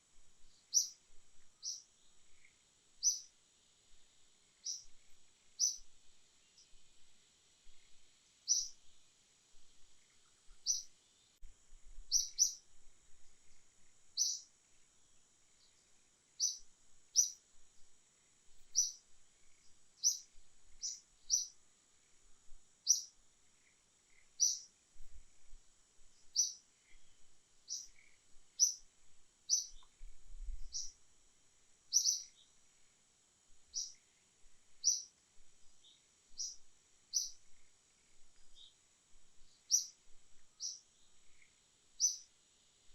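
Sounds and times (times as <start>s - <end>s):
faint high hiss: 0.0s - 42.9s
bird chirping: 0.4s - 3.3s, 4.6s - 6.9s, 7.7s - 8.9s, 10.0s - 11.4s, 12.1s - 12.7s, 14.2s - 14.5s, 15.5s - 17.4s, 18.6s - 21.6s, 22.8s - 24.7s, 26.2s - 28.9s, 29.5s - 31.0s, 31.9s - 32.6s, 33.7s - 34.2s, 34.8s - 35.2s, 35.8s - 38.8s, 39.4s - 42.3s.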